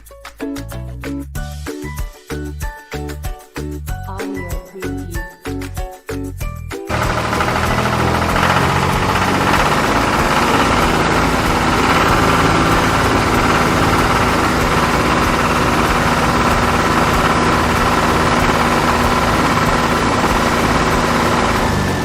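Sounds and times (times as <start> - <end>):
music: 0.0 - 22.0
engine running steadily: 6.9 - 22.0.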